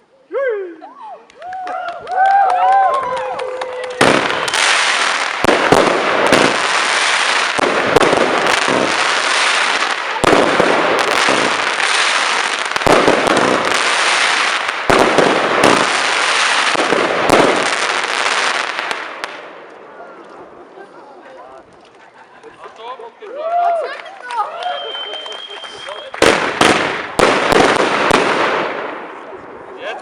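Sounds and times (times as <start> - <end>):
fireworks crackling: 2.1 - 30.0
fireworks bangs: 3.8 - 19.9, 24.6 - 29.8.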